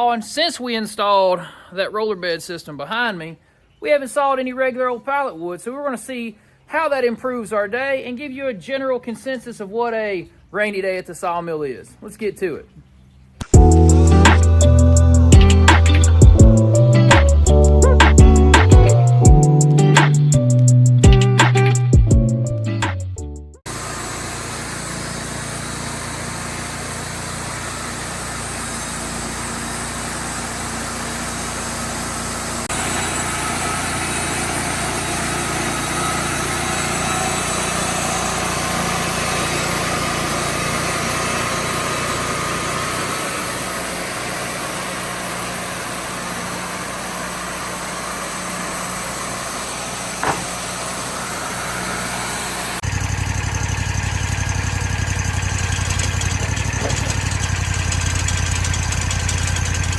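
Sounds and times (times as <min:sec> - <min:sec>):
sawmill engine running: 0:23.7 - 0:59.9.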